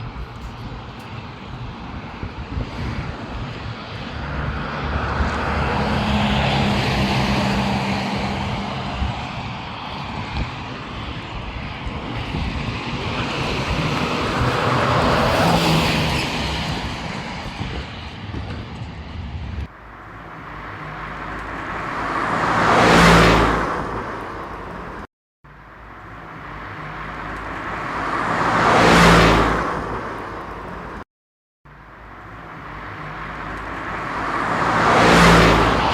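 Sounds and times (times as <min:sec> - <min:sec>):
vehicles passing by: 0:00.0 - 0:31.0, 0:31.7 - 0:35.9.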